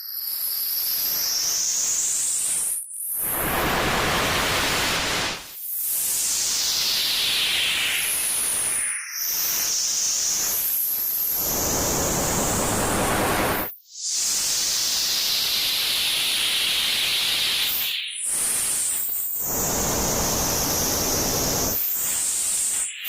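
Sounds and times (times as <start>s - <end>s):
tv static hiss: 11.4s - 13.7s, 19.5s - 21.8s.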